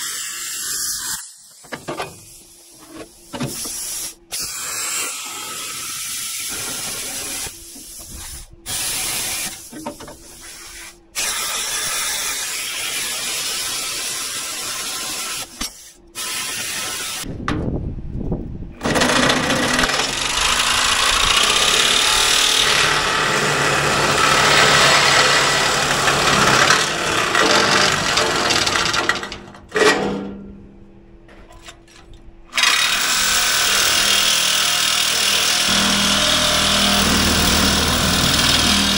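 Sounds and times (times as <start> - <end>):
power tools cutting steel: 18.8 - 30.2, 32.6 - 38.9.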